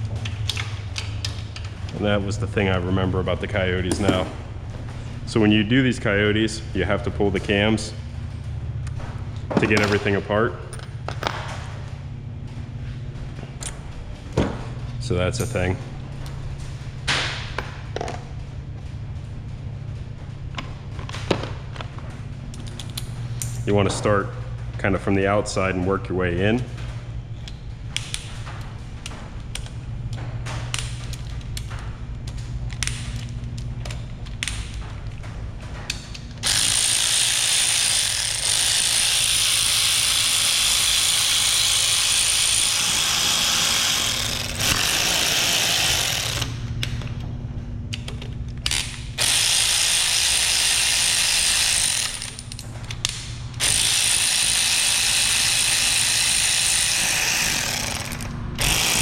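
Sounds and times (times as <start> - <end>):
ratchet wrench clicking: 35.9 - 47.0, 47.9 - 59.0
loud hissing tool: 36.4 - 46.6, 48.8 - 52.4, 53.6 - 59.0.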